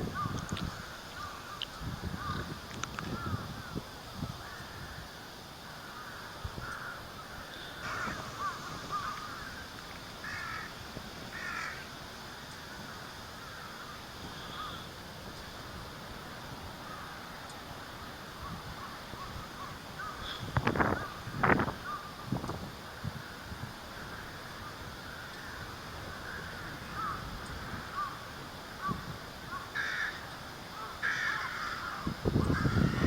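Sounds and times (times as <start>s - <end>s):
wind rumbling on microphone: 0.0s - 33.0s
crows cawing: 0.2s - 2.5s, 5.8s - 14.9s, 19.2s - 21.2s, 24.0s - 33.0s.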